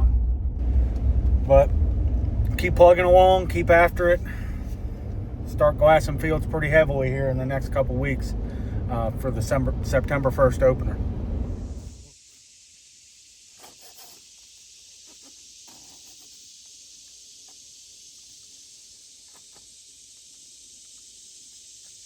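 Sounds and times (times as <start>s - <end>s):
high-pitched hiss: 11.6s - 22.0s.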